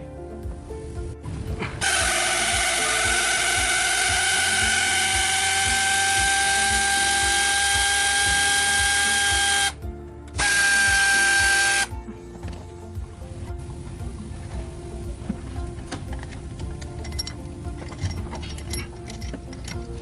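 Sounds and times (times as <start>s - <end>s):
power tool whining: 1.8s - 9.8s, 10.4s - 12.0s.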